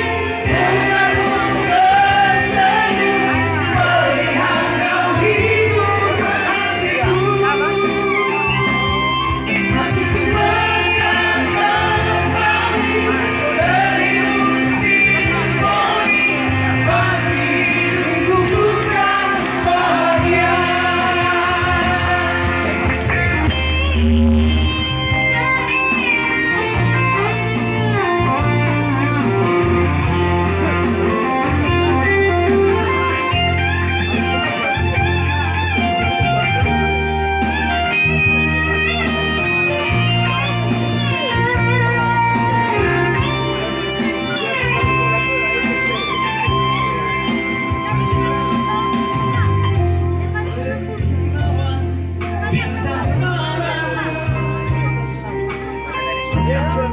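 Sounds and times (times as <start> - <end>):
person singing: 0.0 - 51.2, 52.2 - 56.8
guitar band playing: 0.0 - 56.9
low bass notes: 0.0 - 56.9.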